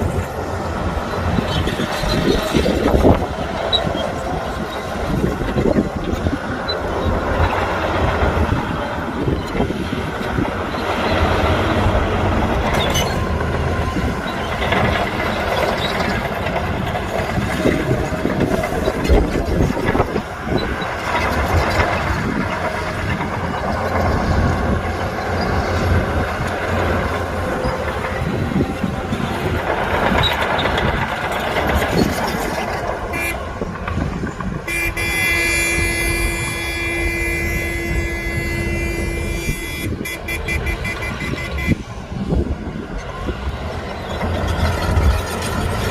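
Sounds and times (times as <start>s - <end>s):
knocks and scraping of dirt and rock: 0.0s - 35.7s, 38.5s - 45.9s
heavy diesel machines working: 0.0s - 45.9s
vehicle horn: 33.1s - 33.4s, 34.6s - 41.8s.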